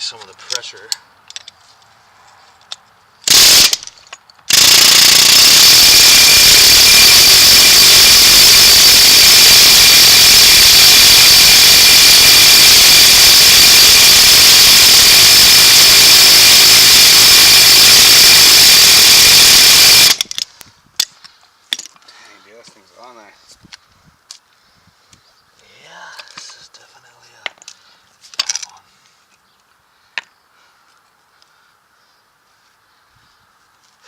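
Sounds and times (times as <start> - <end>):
pneumatic air hammer hammering: 3.3 - 20.4.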